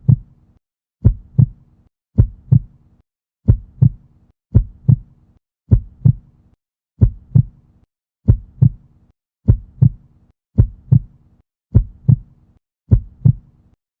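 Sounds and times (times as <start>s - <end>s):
heartbeat thumps: 0.0s - 0.3s, 1.0s - 1.6s, 2.2s - 2.7s, 3.4s - 5.1s, 5.7s - 6.2s, 7.0s - 7.6s, 8.2s - 8.8s, 9.4s - 10.0s, 10.6s - 11.1s, 11.7s - 12.3s, 12.9s - 13.4s.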